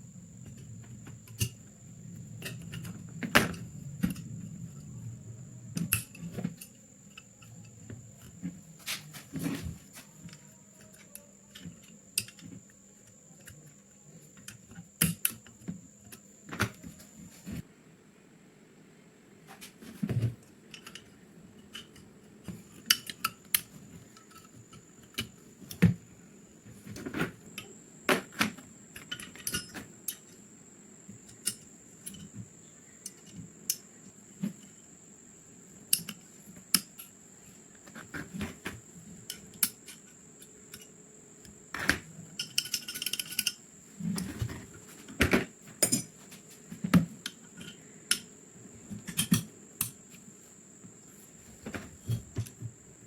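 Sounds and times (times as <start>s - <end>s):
faint high whine: 0.0s - 20.4s
small metal parts clinking: 42.4s - 43.6s.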